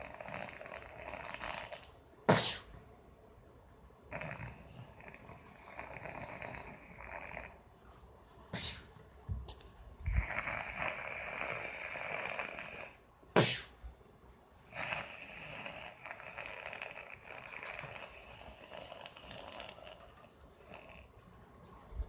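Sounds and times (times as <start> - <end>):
hissing snore breaths: 0.0 - 2.7, 4.1 - 7.7, 10.0 - 13.8, 14.6 - 21.1
sharp snort: 0.0 - 2.8, 8.5 - 8.9, 10.1 - 13.8, 14.7 - 21.0.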